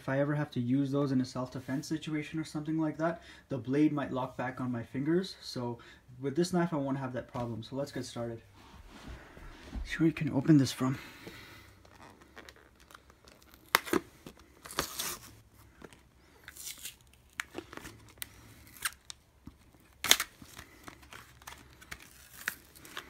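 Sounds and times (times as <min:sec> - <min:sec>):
packaging tearing and crinkling: 0:11.9 - 0:23.0.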